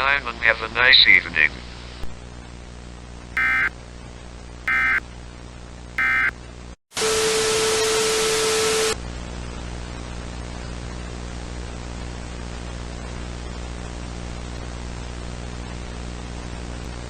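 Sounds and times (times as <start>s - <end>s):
buzzy data bursts: 3.4s - 3.7s, 4.7s - 5.0s, 6.0s - 6.3s
hum: 3.4s - 3.7s, 4.7s - 5.0s, 6.0s - 6.3s
static: 3.4s - 3.7s, 4.7s - 5.0s, 6.0s - 6.3s.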